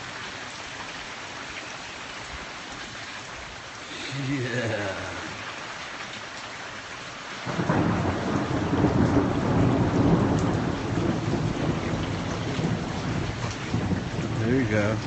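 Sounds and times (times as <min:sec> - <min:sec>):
steady rain: 0:00.0 - 0:15.0
thunder rumbling: 0:07.4 - 0:15.0.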